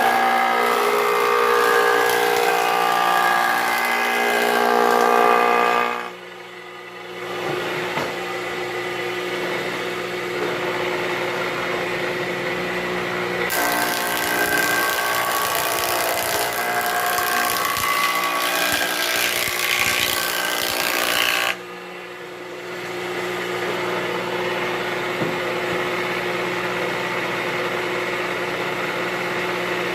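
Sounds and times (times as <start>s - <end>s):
jointer planing a board: 0.0s - 6.1s, 13.5s - 21.6s
jointer humming: 0.0s - 6.2s, 13.5s - 24.4s.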